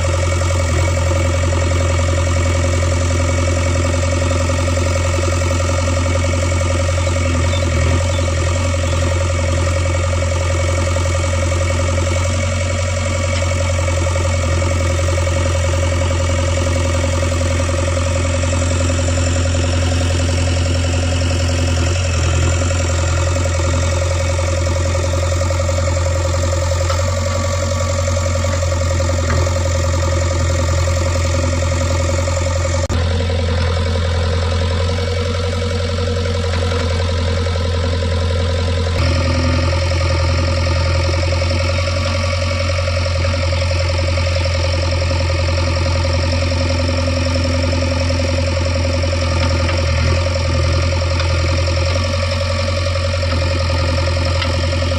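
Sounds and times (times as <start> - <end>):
diesel engine droning: 0.0 - 54.9.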